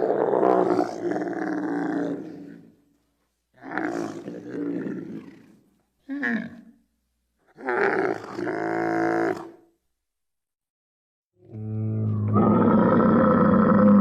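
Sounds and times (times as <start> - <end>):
creature calls: 12.2 - 14.0.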